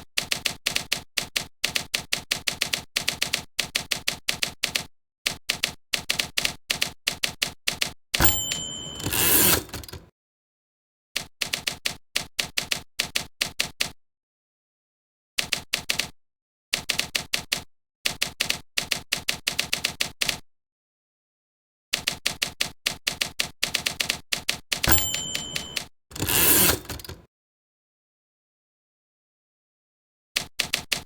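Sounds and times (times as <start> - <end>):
brief ringing tone: 8.2 - 9.6, 24.9 - 26.6.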